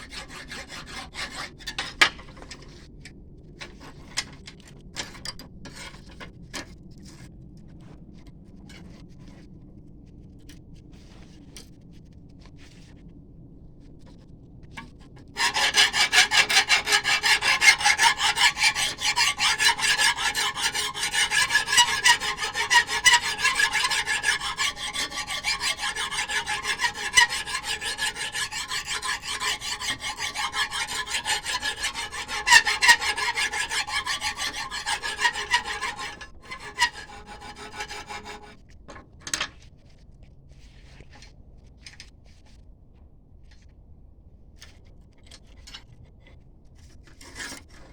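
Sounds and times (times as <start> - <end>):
hand file rasping on steel: 0.0 - 2.0, 15.4 - 38.6
short scrapes: 15.4 - 38.6.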